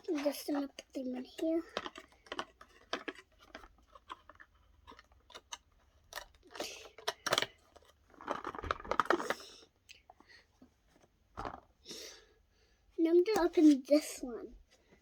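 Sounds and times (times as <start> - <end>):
toy erasers clicking and tapping: 0.0 - 8.4
rustling handling noise: 0.0 - 11.8, 13.0 - 15.0.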